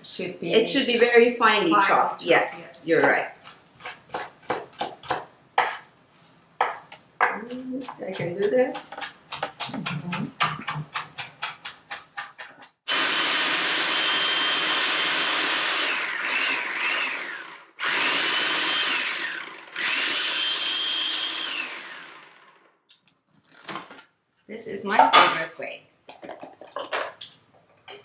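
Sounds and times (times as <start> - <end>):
knife chopping on cutting board: 3.0 - 5.9, 6.6 - 12.7
food processor motor whine: 12.9 - 22.7.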